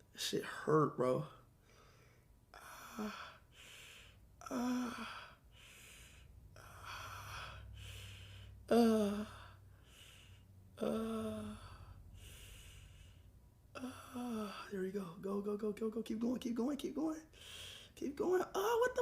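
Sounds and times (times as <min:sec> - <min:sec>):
breathy sighs: 0:01.6 - 0:14.7.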